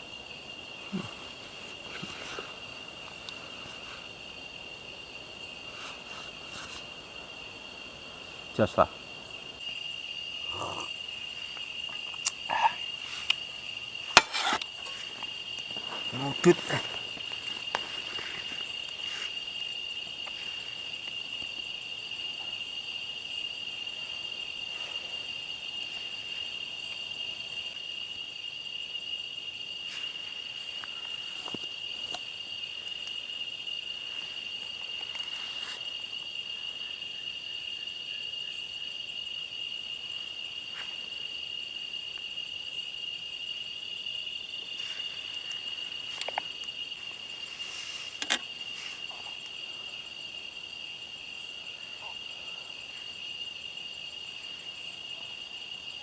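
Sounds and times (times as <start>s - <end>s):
insects droning: 0.0s - 56.0s.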